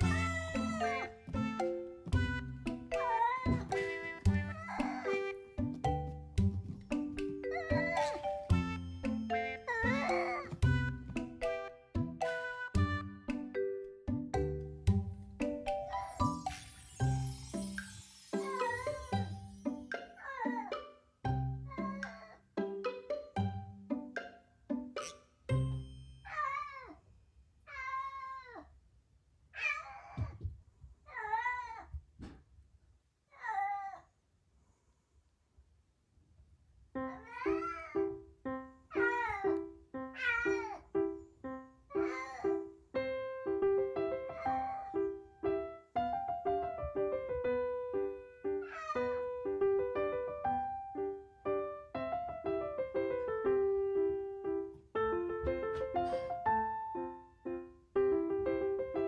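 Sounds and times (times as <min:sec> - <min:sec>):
cat meowing: 0:00.0 - 0:01.1, 0:27.7 - 0:28.6, 0:29.6 - 0:30.3, 0:37.1 - 0:38.0, 0:40.2 - 0:40.8, 0:48.6 - 0:49.1
piano music: 0:00.0 - 0:26.1, 0:37.0 - 0:59.0.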